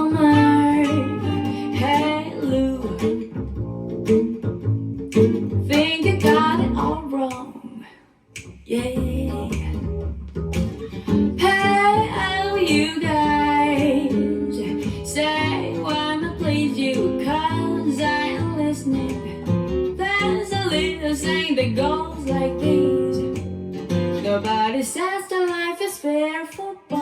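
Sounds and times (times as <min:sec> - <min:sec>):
person singing: 0:00.0 - 0:03.2, 0:11.4 - 0:19.3, 0:24.2 - 0:27.0
pop song through speakers: 0:00.0 - 0:03.2, 0:05.6 - 0:09.8, 0:11.4 - 0:19.4, 0:20.0 - 0:27.0.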